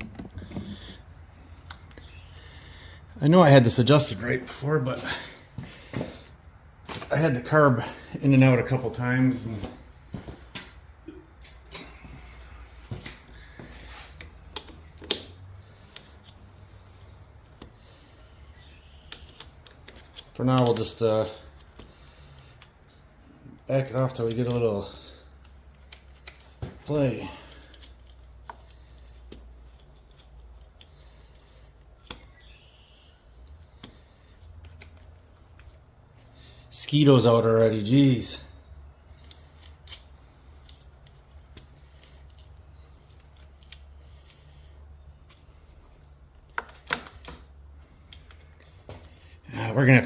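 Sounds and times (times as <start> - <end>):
faint steady hum: 0.0 - 50.0
light clicks and knocks of tools: 9.5 - 17.9, 19.1 - 32.4, 38.8 - 49.4.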